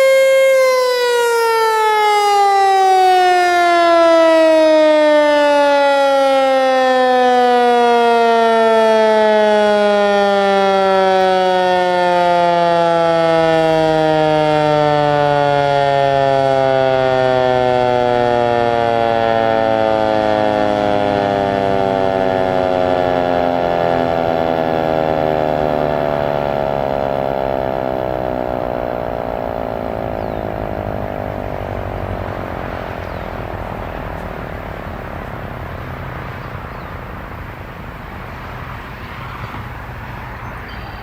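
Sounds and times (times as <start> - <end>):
warning siren winding down: 0.0 - 41.0
low background rumble: 23.8 - 38.3.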